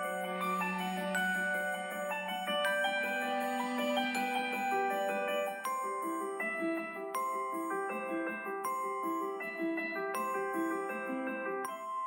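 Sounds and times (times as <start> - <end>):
mallet-like alarm melody: 0.0 - 7.5.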